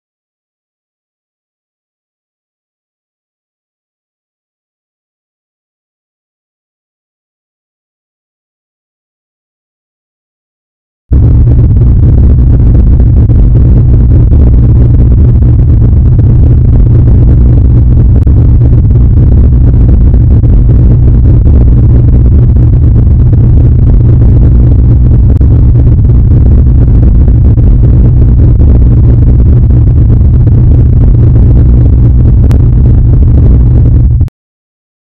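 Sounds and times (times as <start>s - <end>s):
deep bass rumble: 11.1s - 34.3s.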